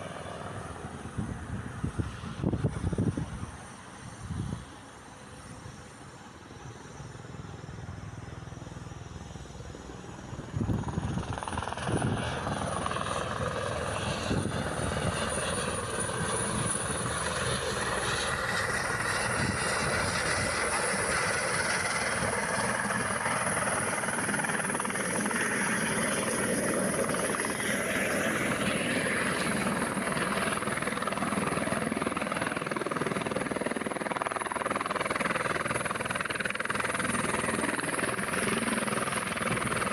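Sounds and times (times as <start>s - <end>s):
helicopter turbine and rotor: 0.0s - 39.9s
high turbine whine: 0.0s - 39.9s.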